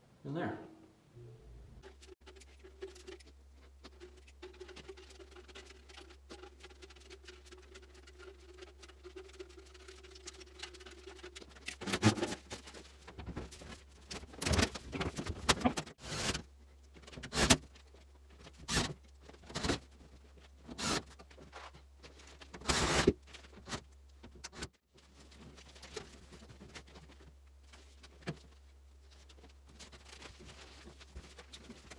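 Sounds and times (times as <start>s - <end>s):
metal duct scraping and rattling: 7.7s - 16.4s.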